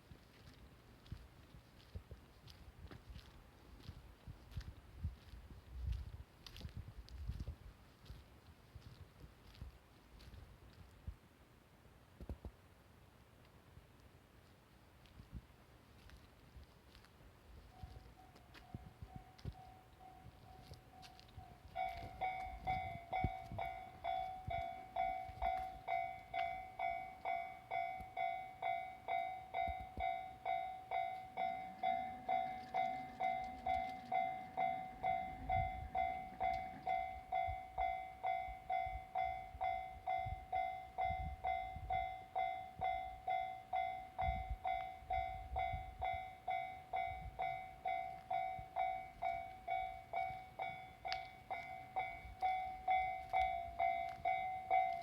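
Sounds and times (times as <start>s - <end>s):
level crossing bell dinging: 18.2s - 55.0s.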